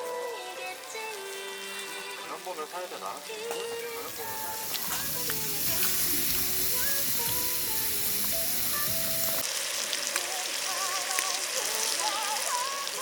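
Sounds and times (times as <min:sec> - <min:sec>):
background music: 0:00.0 - 0:09.4
steady hiss: 0:00.0 - 0:13.0.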